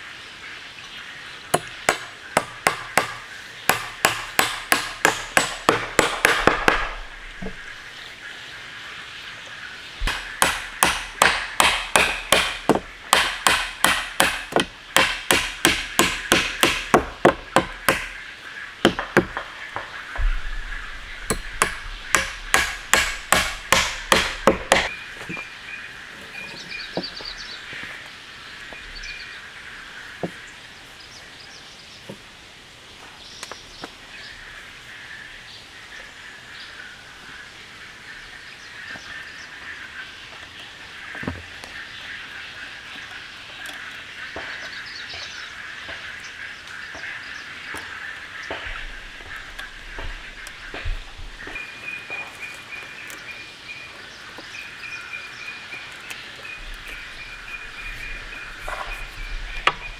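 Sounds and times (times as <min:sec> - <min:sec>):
hard striking blows: 0:01.6 - 0:07.6, 0:10.0 - 0:18.2, 0:20.2 - 0:24.9.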